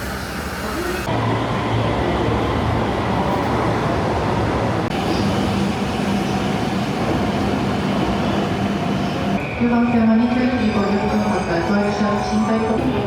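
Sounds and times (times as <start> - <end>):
electric train humming: 0.0 - 13.0.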